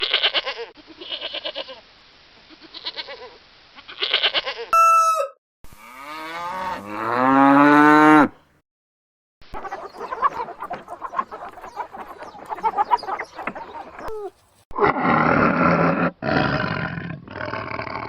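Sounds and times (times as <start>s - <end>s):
cow mooing: 4.8s - 8.4s.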